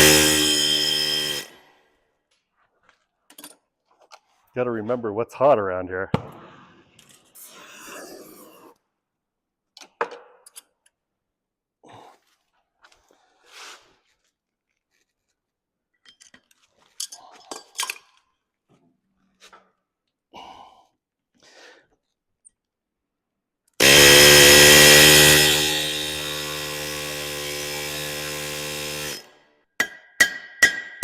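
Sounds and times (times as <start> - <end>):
pneumatic rivet gun hammering: 0.0 - 1.5, 23.8 - 29.3.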